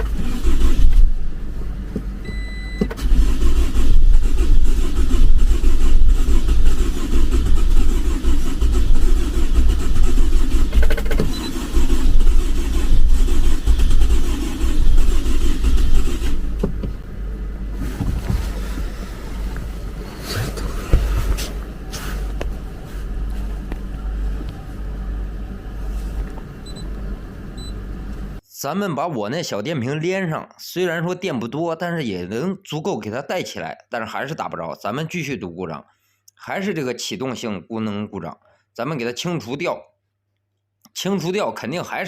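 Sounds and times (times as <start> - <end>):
car starter cranking engine: 0.0 - 22.0
short electronic beep: 2.2 - 2.9.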